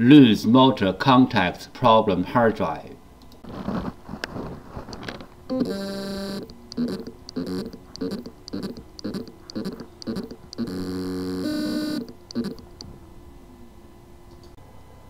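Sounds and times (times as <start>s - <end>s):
hard drive motor buzzing chirps: 5.5s - 12.9s.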